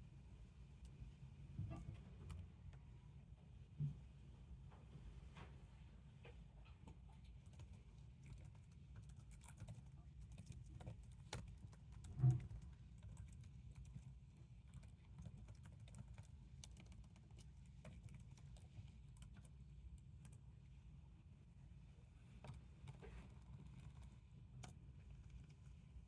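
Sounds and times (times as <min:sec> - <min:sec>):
low background hum: 0:00.0 - 0:26.0
typing on computer keyboard: 0:07.4 - 0:19.6.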